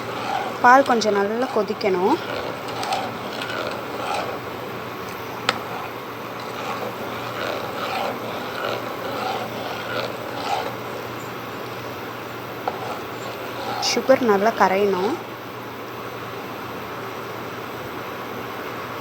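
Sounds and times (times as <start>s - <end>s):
spoon scraping a pan: 0.0s - 11.9s, 12.5s - 15.2s
steady low hum: 0.0s - 18.9s.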